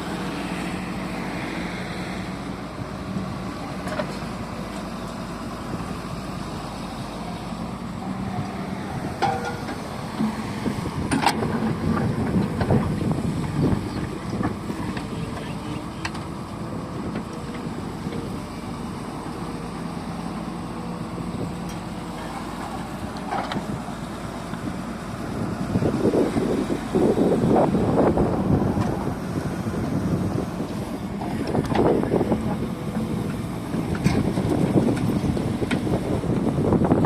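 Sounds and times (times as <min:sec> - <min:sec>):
diesel engine running: 0:00.0 - 0:37.0
knocks and clanks: 0:09.2 - 0:10.5.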